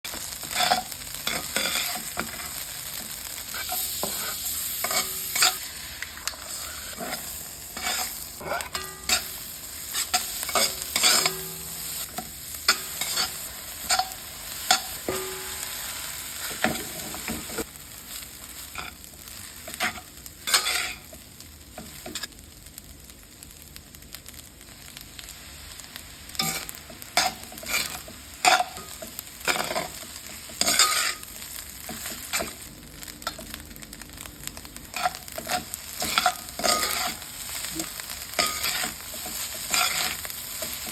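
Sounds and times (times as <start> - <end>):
fried rice sizzling in a pan: 0.0 - 40.9
spatula scraping and clinking on pan: 0.1 - 2.6, 3.4 - 5.6, 6.2 - 17.7, 19.7 - 21.2, 26.4 - 31.3, 34.9 - 40.9.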